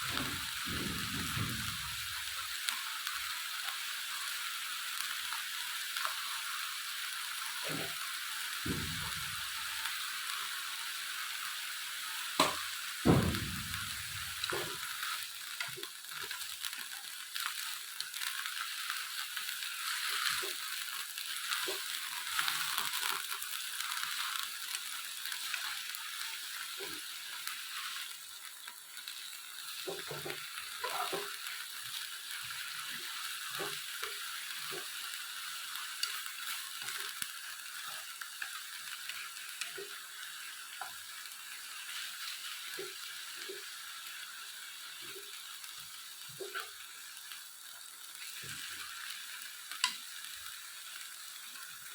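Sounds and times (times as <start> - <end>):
food sizzling in a pan: 0.0 - 51.9
loud knocks: 0.1 - 2.0, 12.4 - 14.1.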